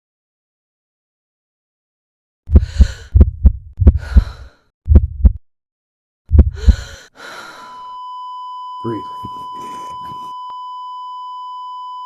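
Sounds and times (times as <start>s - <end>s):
heartbeat thumps: 2.5s - 5.4s, 6.3s - 7.0s.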